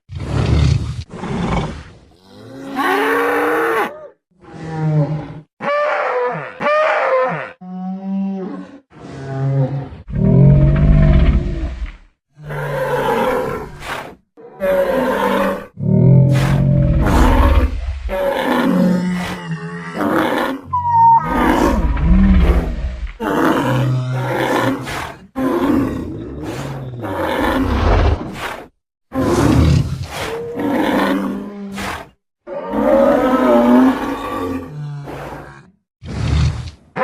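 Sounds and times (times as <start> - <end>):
deep creature roars: 7.4 - 13.8, 14.5 - 28.2, 29.1 - 36.8.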